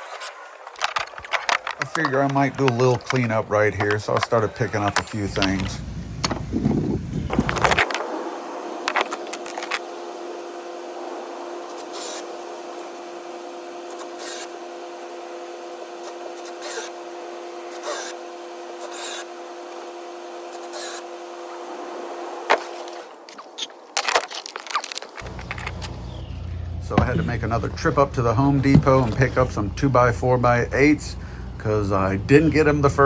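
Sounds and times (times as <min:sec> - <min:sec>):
steady hum: 0:00.5 - 0:33.0
wooden knocks and scrapes: 0:00.6 - 0:05.0, 0:26.9 - 0:27.8, 0:28.4 - 0:29.6.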